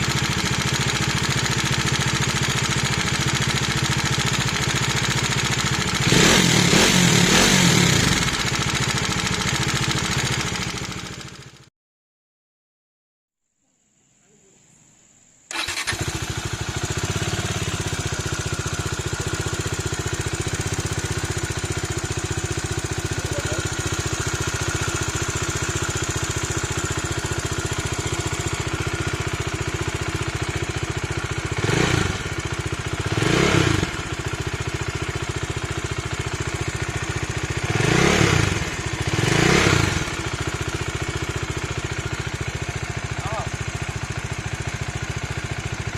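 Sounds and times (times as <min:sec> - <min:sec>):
motorcycle engine idling: 0:00.0 - 0:11.7, 0:15.5 - 0:45.9.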